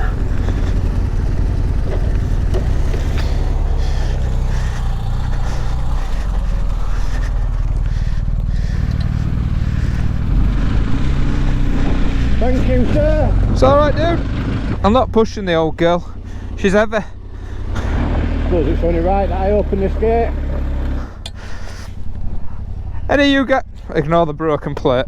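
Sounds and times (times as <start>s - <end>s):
tyre noise: 0.0s - 15.0s
motorcycle engine at low revs: 0.0s - 25.0s.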